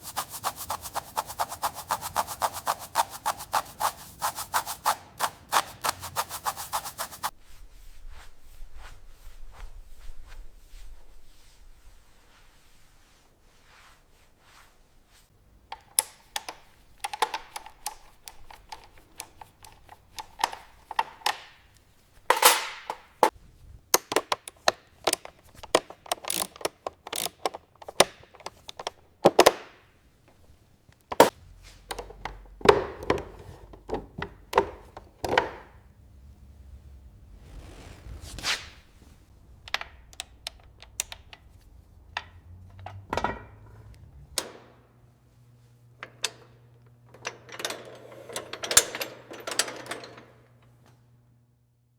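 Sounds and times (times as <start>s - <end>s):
sharp clicks and knocks of hard objects: 15.7s - 23.3s, 23.9s - 35.8s.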